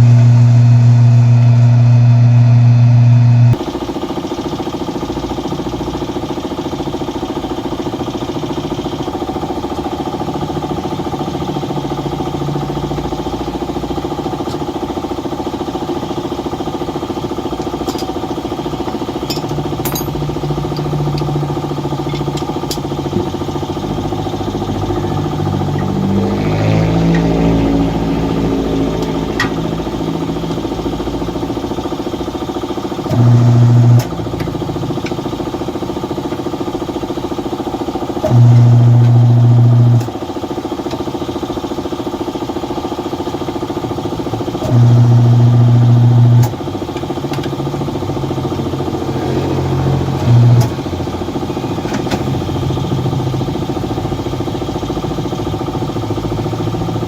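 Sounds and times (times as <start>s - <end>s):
loud low hum: 0.0s - 3.9s, 11.0s - 36.8s, 44.4s - 57.0s
machine motor humming: 0.0s - 5.8s, 8.2s - 41.5s, 44.3s - 57.0s.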